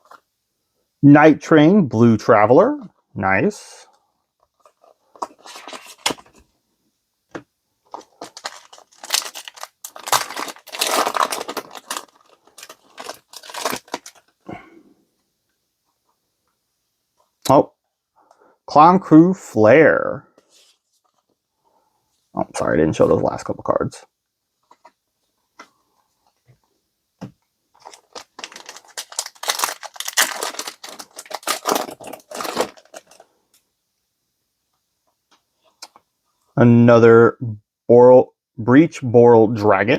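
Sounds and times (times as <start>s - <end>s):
foil wrapper tearing and crinkling: 8.0s - 14.4s, 27.8s - 33.2s.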